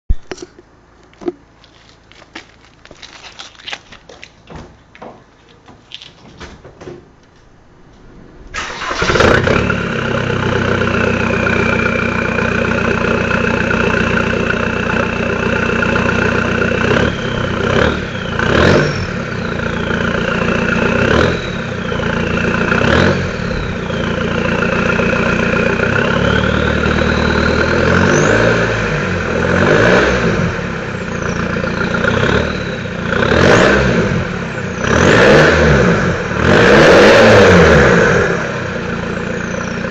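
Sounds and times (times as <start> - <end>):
diesel car engine idling: 8.2 - 36.4, 37.9 - 39.9
engine revving: 8.5 - 39.9.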